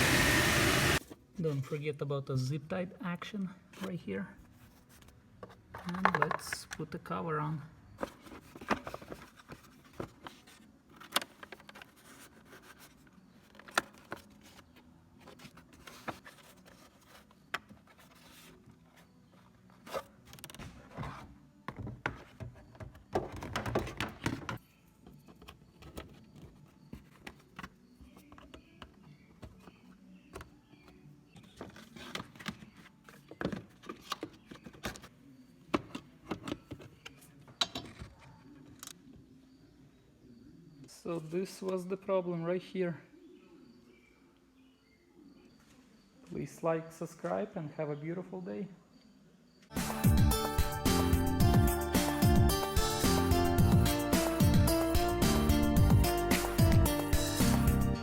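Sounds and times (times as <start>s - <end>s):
plastic cover clicking and knocking: 5.4s - 6.8s
scraping and rustling: 8.0s - 21.4s.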